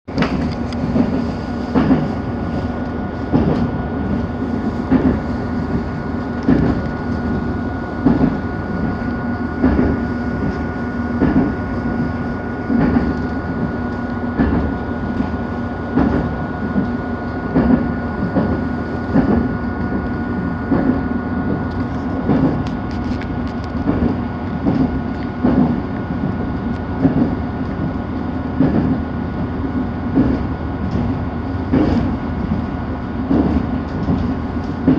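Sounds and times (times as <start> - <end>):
train wheels clattering over rail joints: 0.2 - 2.2, 3.3 - 3.8, 4.6 - 7.4, 8.0 - 9.0, 9.6 - 11.6, 12.7 - 13.8, 21.6 - 28.0, 28.6 - 29.0, 30.1 - 32.7, 33.3 - 34.9.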